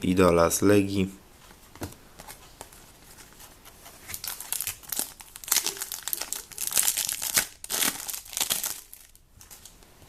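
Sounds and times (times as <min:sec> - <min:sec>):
plastic wrapping crinkling and tearing: 0:04.0 - 0:09.8.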